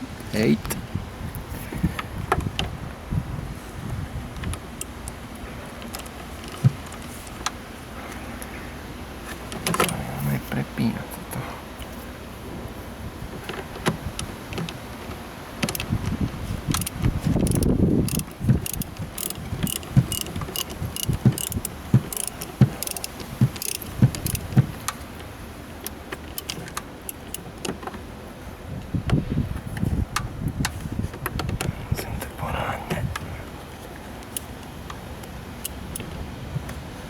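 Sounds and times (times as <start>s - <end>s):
light metallic clicks: 15.6s - 28.0s
metal tools knocking: 16.8s - 24.8s.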